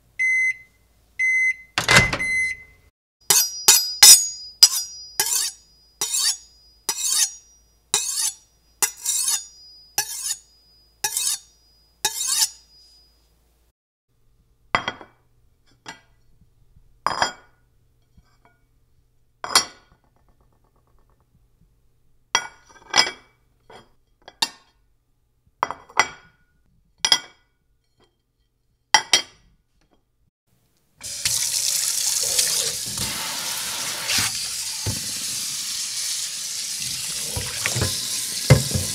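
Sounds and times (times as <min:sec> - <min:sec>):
sharp ringing clinks: 0:03.3 - 0:13.3
tap water running into sink: 0:31.0 - 0:38.9.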